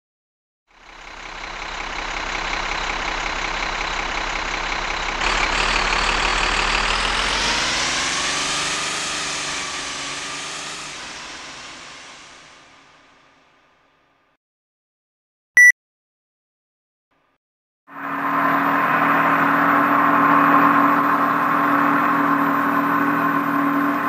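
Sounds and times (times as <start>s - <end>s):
motorboat engine passing by: 5.2s - 13.2s, 18.0s - 24.0s.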